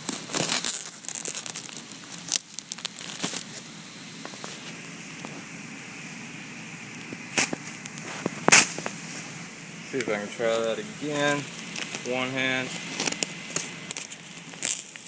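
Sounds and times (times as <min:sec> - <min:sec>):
plastic sheet crinkling: 0:00.0 - 0:03.7, 0:10.4 - 0:15.0
faint steady hiss: 0:00.0 - 0:15.0.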